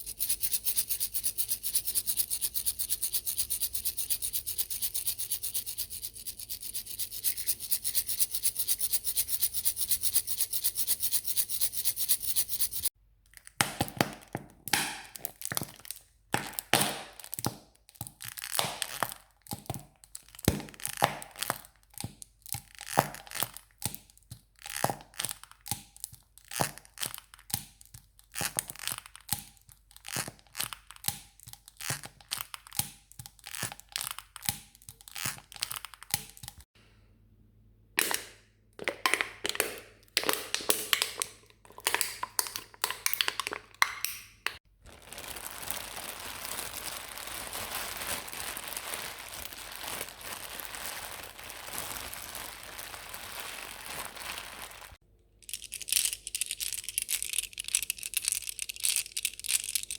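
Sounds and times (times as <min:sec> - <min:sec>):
fast scratching rattle: 0:00.0 - 0:12.9.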